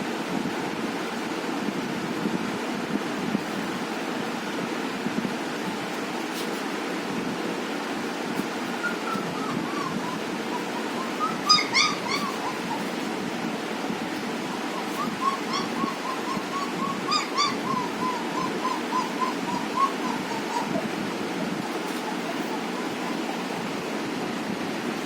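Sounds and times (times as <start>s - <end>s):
puppy yelping: 8.5s - 13.1s, 14.4s - 23.9s
puppy whimpering: 8.6s - 13.1s, 14.4s - 23.9s.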